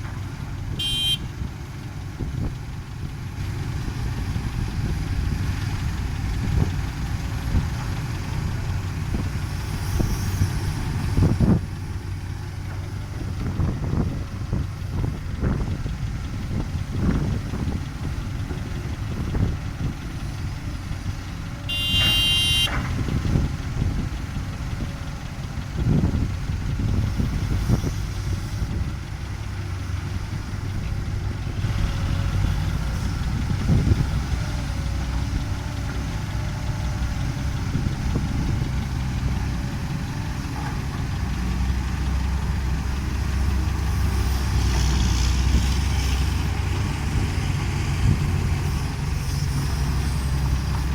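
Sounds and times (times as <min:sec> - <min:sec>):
heavy diesel engines running: 0:00.0 - 0:50.9
high squeal: 0:48.4 - 0:50.9.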